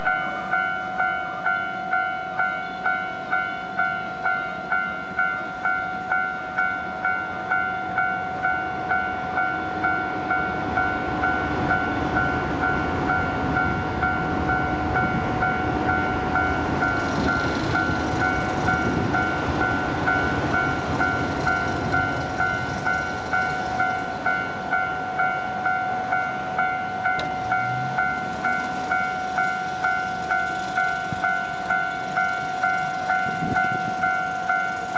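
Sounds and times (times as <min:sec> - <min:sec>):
level-crossing warning bell: 0:00.0 - 0:34.9
train passing with rushing rumble: 0:00.0 - 0:34.9.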